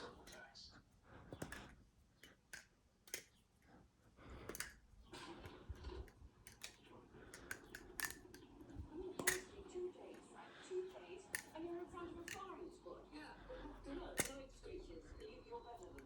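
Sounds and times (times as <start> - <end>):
butterfly knife metallic clicks: 1.3 - 3.4, 4.4 - 4.8, 5.4 - 9.8, 11.2 - 12.8, 13.9 - 16.0.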